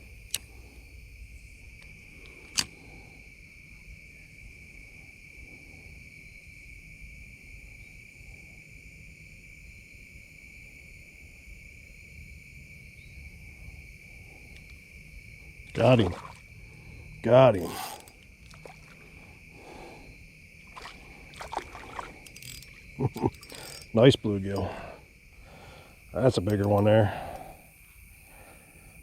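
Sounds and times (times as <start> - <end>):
insects chorus: 0.0 - 29.0
sharp clicks: 1.8 - 2.8.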